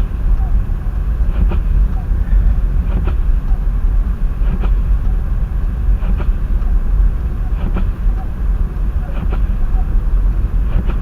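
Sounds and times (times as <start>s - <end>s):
vehicle rumble: 0.0s - 11.0s.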